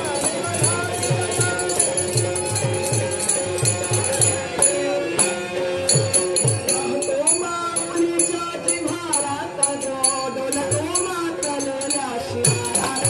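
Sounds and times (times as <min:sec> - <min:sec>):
man singing: 0:00.0 - 0:03.0, 0:06.6 - 0:13.0.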